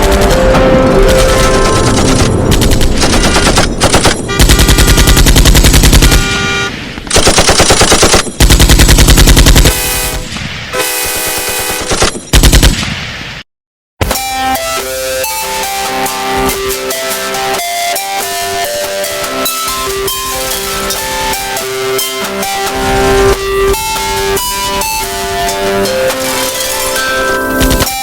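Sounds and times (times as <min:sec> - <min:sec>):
loud music: 0:00.0 - 0:03.0, 0:14.1 - 0:28.0
loud rapid-fire rattling: 0:00.0 - 0:13.0, 0:15.2 - 0:28.0.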